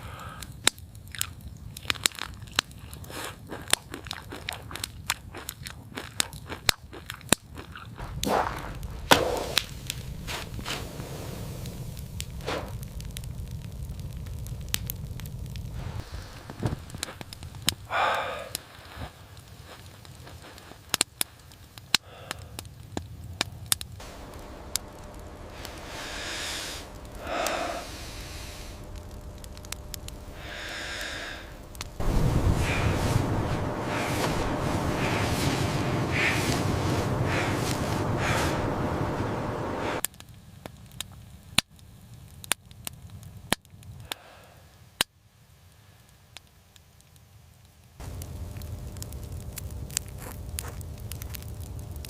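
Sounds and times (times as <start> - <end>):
wood fire crackling and popping: 0.0 - 52.0
low steady rumble: 7.9 - 18.0, 24.0 - 40.0, 48.0 - 52.0
soft rushing noise: 8.0 - 12.8, 24.0 - 40.0
steady noisy background: 24.0 - 40.0.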